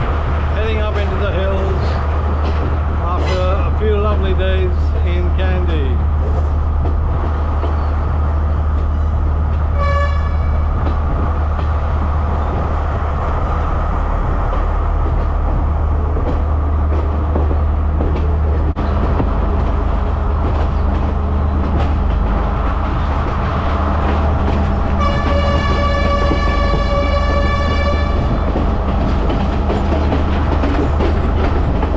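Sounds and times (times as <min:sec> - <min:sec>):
train rumbling: 0:00.0 - 0:31.9
train horn toot: 0:09.7 - 0:10.6, 0:25.0 - 0:28.3.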